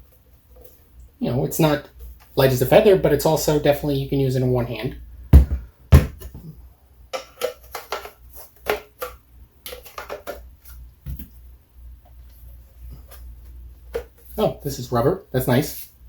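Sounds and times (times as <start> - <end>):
sharp knocks on plastic: 5.3 - 6.4
plastic parts clicking: 7.2 - 10.4.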